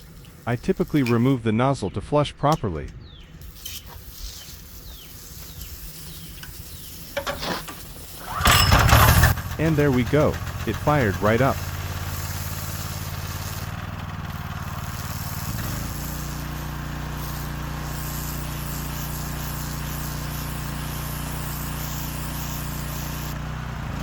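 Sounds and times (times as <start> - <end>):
small four-stroke engine running: 4.8 - 24.0.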